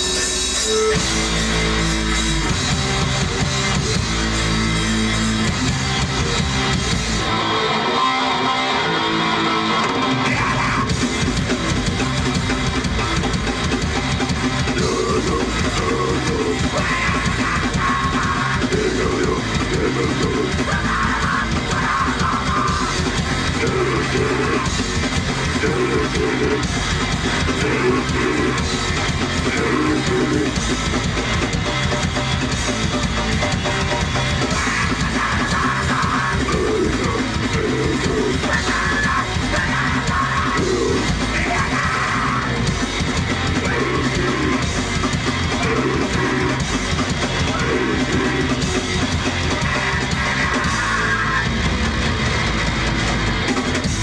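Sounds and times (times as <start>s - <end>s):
live rock band playing: 0.0s - 54.0s.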